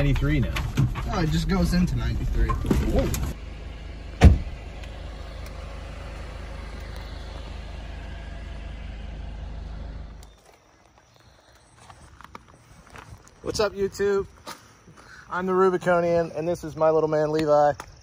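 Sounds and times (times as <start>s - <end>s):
engine and road rumble in car: 0.0s - 12.7s
sharp thump: 4.1s - 4.6s.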